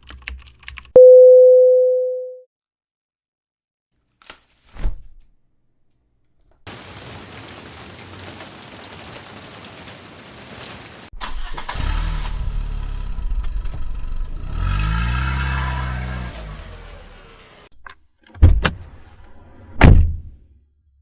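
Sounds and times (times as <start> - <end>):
motor starting and humming: 16.2 - 17.7.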